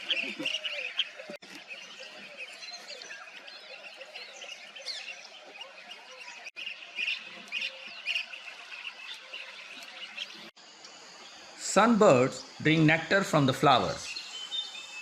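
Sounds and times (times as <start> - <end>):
wild birds chirping: 0.0 - 15.0.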